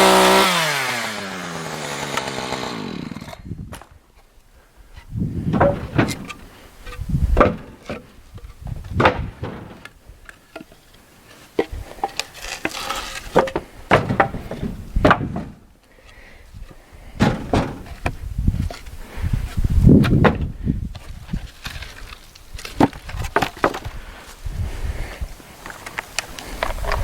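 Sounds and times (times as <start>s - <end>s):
wood scrape: 1.8s - 15.6s, 16.6s - 27.0s
wood pieces knocking and thumping: 2.1s - 4.3s, 5.0s - 15.7s, 16.6s - 24.4s.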